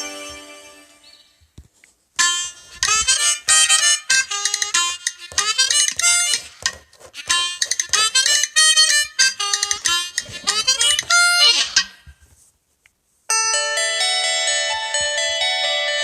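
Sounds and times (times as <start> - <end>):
ringtone with sustained notes: 0.0 - 1.4, 2.2 - 6.5, 13.3 - 16.0
fast clipped ringtone melody: 2.2 - 11.9, 13.3 - 16.0.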